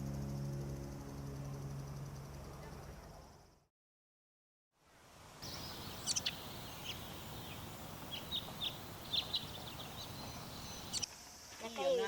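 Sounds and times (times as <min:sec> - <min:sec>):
outdoor background hiss: 0:00.0 - 0:03.7, 0:04.7 - 0:12.0
small birds chirping: 0:05.4 - 0:11.1.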